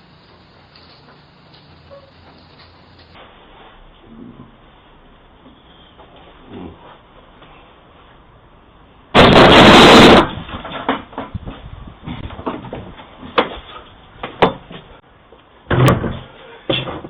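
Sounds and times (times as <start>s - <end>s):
loud crash: 9.2s - 10.7s
knocks and clatter: 9.2s - 14.9s.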